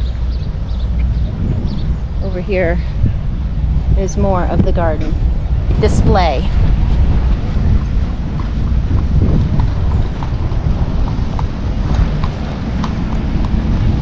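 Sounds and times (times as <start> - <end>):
low rumble: 0.0 - 14.0
horse hooves clopping: 6.9 - 14.0.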